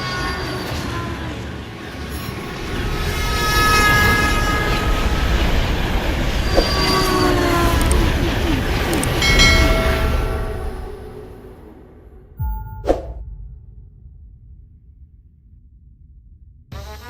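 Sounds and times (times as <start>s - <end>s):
train rumble: 0.0s - 13.8s
train horn tones: 2.1s - 11.3s
wheels squealing: 2.1s - 11.4s.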